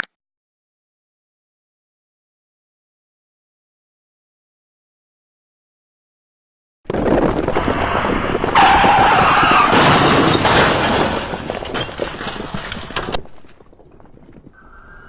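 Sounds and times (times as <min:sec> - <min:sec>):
crashing impacts clattering: 0:06.9 - 0:15.0.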